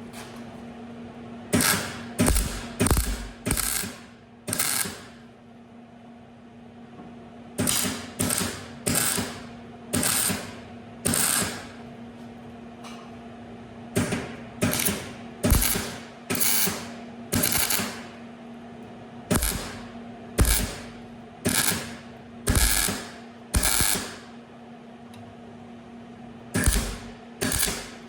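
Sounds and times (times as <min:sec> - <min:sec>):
steady hum: 0:13.4 - 0:28.0
welder crackling: 0:19.3 - 0:19.8, 0:20.4 - 0:20.8, 0:22.5 - 0:24.1, 0:26.6 - 0:27.9.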